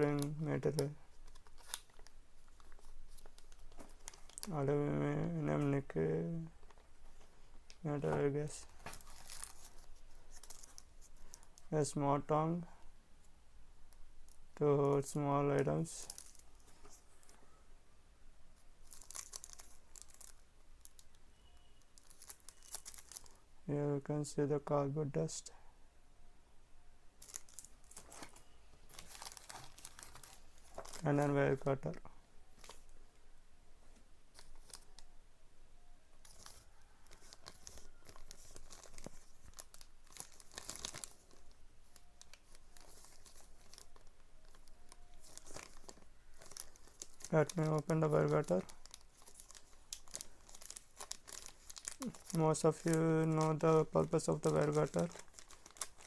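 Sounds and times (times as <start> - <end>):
packaging rustling and crinkling: 0.0 - 5.7, 6.4 - 11.7, 15.9 - 17.5, 18.8 - 21.2, 21.8 - 23.4, 27.2 - 33.0, 34.3 - 35.1, 36.2 - 56.0.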